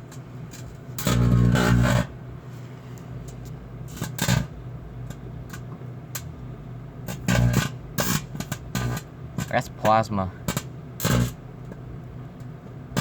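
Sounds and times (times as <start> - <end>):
microwave oven humming: 0.0 - 13.0
electric arcing crackling snaps: 0.5 - 2.1, 3.9 - 5.6, 7.0 - 11.4
loud buzzing bursts: 1.0 - 2.2, 7.0 - 9.1, 10.5 - 11.4.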